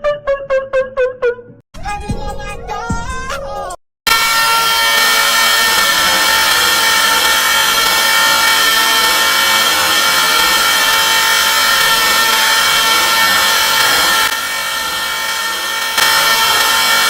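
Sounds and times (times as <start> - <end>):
harsh screaming: 4.1 - 17.0.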